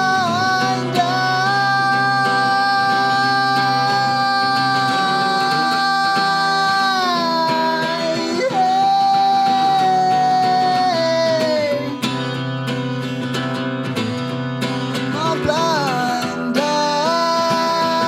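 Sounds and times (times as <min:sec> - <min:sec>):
man singing a held note: 0:00.0 - 0:12.0
acoustic guitar: 0:00.0 - 0:18.0.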